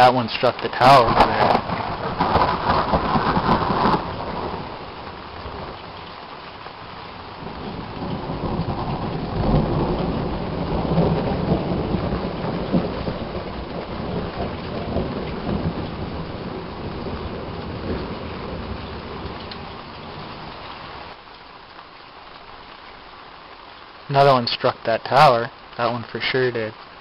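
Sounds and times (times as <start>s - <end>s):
thunder rumbling: 0.0s - 21.2s
steady rain: 0.0s - 27.0s.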